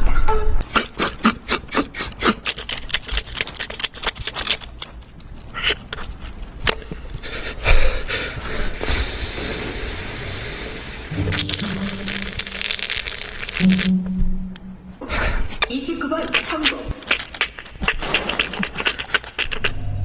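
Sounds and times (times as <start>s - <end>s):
breathy hissing with whistle: 7.3s - 13.9s
beatbox clicks and pops: 11.2s - 13.9s, 15.6s - 19.7s.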